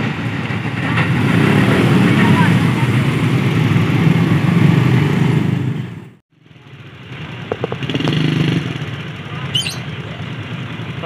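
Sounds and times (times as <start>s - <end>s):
motorcycle engines running: 0.0s - 11.0s.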